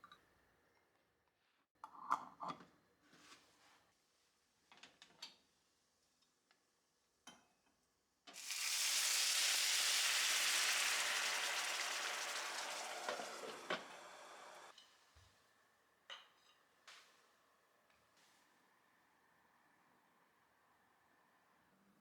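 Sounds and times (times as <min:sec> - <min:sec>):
food sizzling in hot pan: 0:08.4 - 0:14.7.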